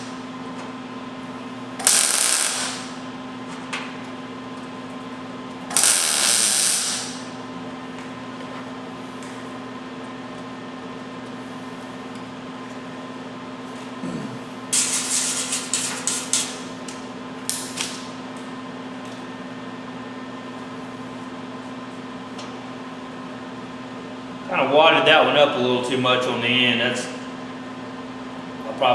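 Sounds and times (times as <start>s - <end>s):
steady machine hum: 0.0s - 28.9s
arc welding sizzling and crackling: 1.8s - 3.1s, 5.7s - 7.4s, 14.7s - 18.1s.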